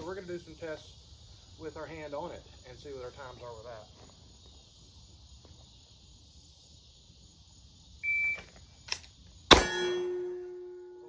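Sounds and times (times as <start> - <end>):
pistol shot: 9.5 - 10.5.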